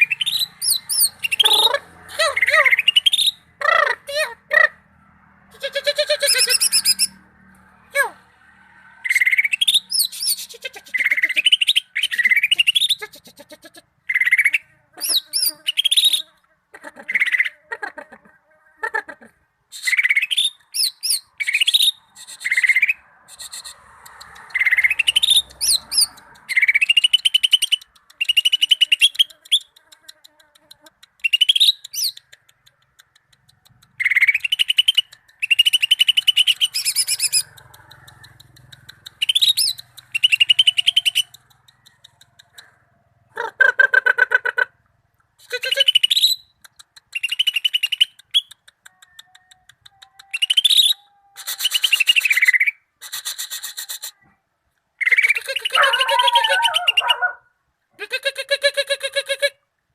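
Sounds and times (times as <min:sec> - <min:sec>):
bird whistling and trilling: 0:00.0 - 0:03.4, 0:05.7 - 0:07.2, 0:09.1 - 0:13.2, 0:14.1 - 0:16.3, 0:19.7 - 0:23.8, 0:24.5 - 0:29.7, 0:31.2 - 0:32.2, 0:34.0 - 0:37.5, 0:39.1 - 0:41.4, 0:45.5 - 0:48.6, 0:50.4 - 0:54.1, 0:55.0 - 0:57.3.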